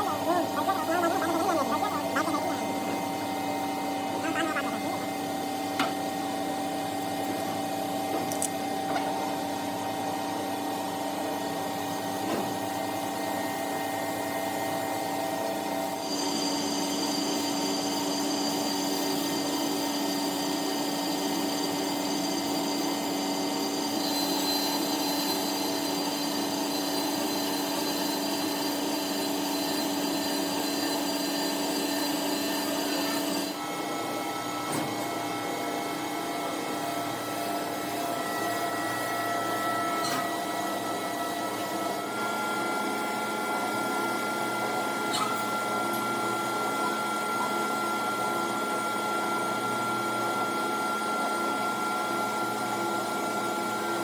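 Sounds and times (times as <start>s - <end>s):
power tool whining: 0.0s - 10.0s.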